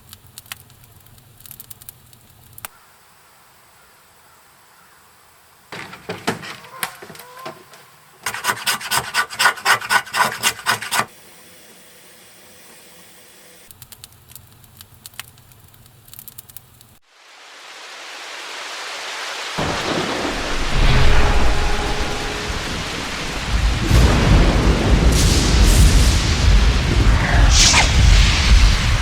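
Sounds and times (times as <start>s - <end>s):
rain hiss: 0.0s - 6.7s, 11.1s - 29.0s
rasping scraping strokes: 5.8s - 11.1s
scattered clicks: 13.7s - 17.0s
thunder rumbling: 19.6s - 29.0s.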